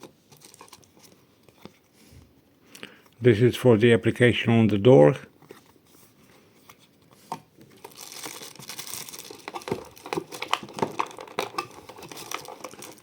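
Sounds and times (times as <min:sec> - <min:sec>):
packaging crinkling: 0:00.0 - 0:01.7, 0:07.6 - 0:13.0.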